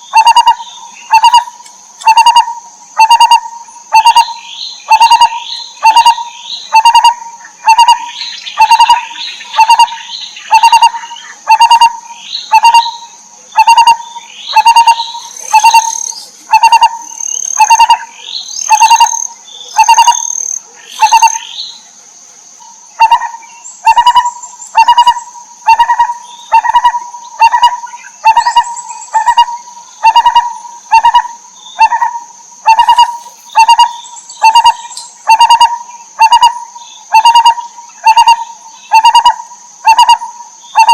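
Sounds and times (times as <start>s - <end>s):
soft bird chirps: 3.1s - 22.0s
barbet calling low note: 13.6s - 17.0s.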